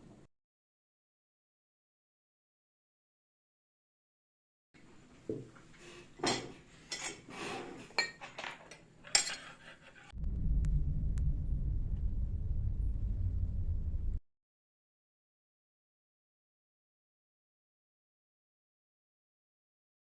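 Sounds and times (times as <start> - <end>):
dishes and cutlery clattering: 6.2 - 10.1
steady low rumble: 10.1 - 14.2.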